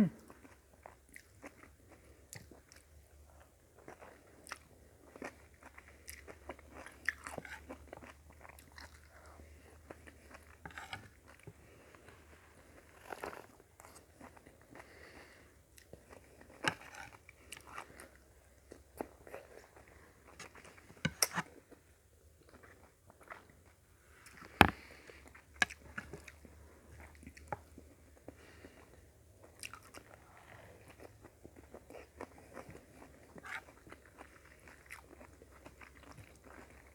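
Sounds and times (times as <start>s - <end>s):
chewing and biting food: 0.3s - 11.9s, 27.0s - 36.9s.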